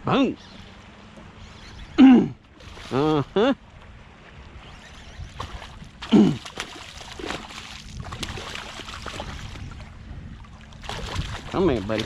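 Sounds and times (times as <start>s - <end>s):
water lapping around boat: 0.0s - 12.0s
short falling grunt: 2.0s - 3.5s, 6.1s - 6.4s.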